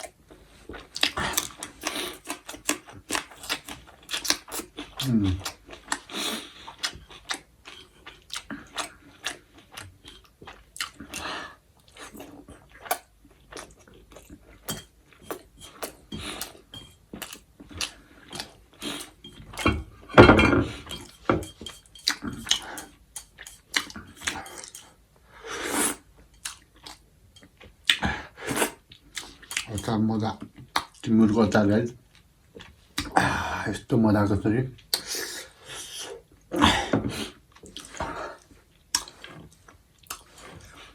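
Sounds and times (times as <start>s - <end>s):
person chewing food: 0.0s - 31.1s, 34.8s - 40.9s
cutlery clicking on a plate: 14.7s - 16.0s.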